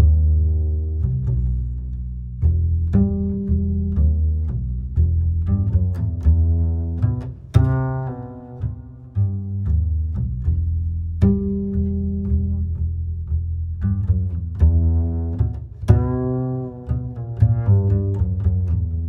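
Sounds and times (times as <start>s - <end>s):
low strings bowed and plucked: 0.0s - 19.0s.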